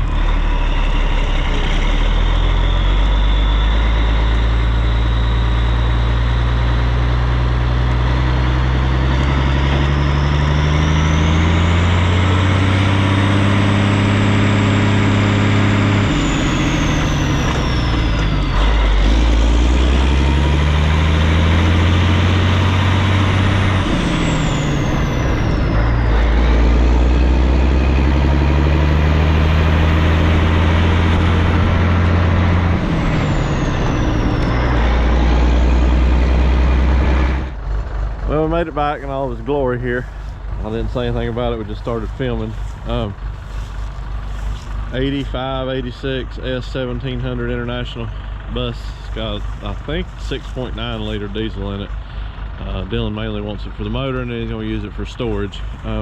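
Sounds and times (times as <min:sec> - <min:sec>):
high whine: 0:00.0 - 0:56.0
truck engine accelerating: 0:00.0 - 0:56.0.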